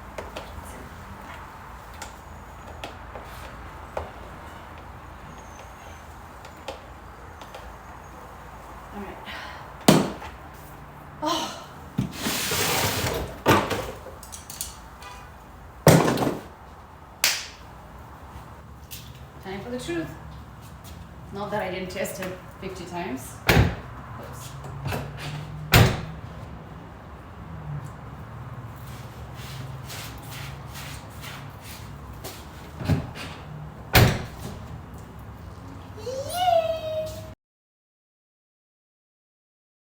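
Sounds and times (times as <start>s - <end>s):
car door thumps and clunks: 23.5s - 23.9s, 25.7s - 26.2s, 32.8s - 33.3s, 33.9s - 34.6s.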